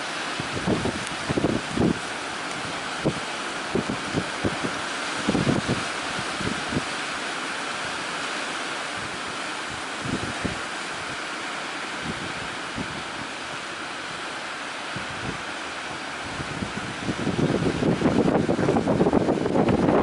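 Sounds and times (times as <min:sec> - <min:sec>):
sea waves breaking: 0:00.0 - 0:20.0
wind buffeting microphone: 0:00.2 - 0:07.0, 0:08.9 - 0:11.2, 0:12.0 - 0:14.3, 0:14.9 - 0:20.0.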